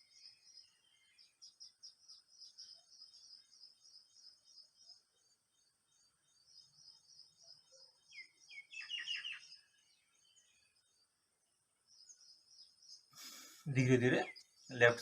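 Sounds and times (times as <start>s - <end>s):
bird calling: 7.5s - 9.7s.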